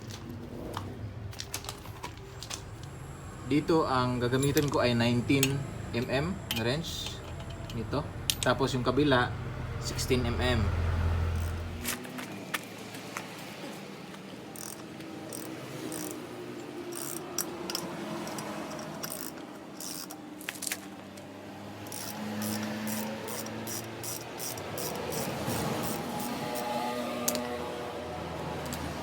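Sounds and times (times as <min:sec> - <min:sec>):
wrench metallic clicks and scrapes: 0:14.6 - 0:16.2, 0:16.8 - 0:20.9, 0:21.8 - 0:27.5.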